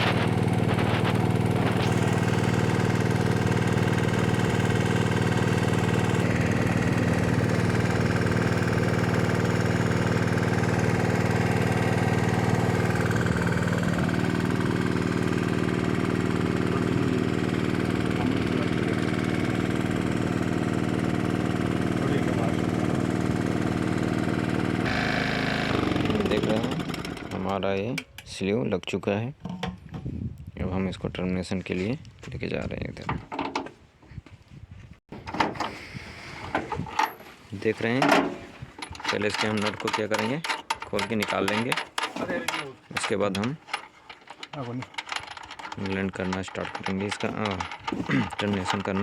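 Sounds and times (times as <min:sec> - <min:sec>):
heat gun motor whine: 0:00.1 - 0:18.0, 0:23.5 - 0:27.4.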